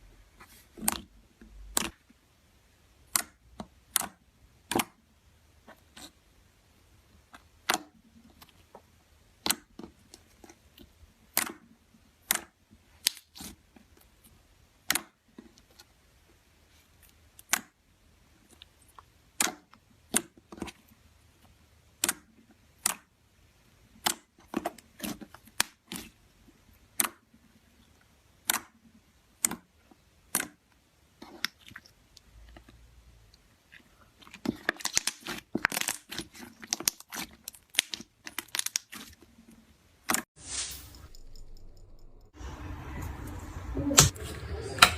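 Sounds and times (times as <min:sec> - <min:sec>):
slime popping and crackling: 0:34.2 - 0:39.2.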